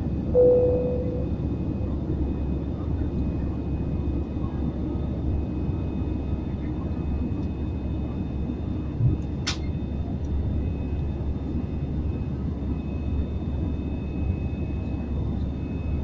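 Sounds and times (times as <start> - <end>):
airliner cabin engine roar: 0.0 - 16.0
faint steady whine: 0.0 - 16.0.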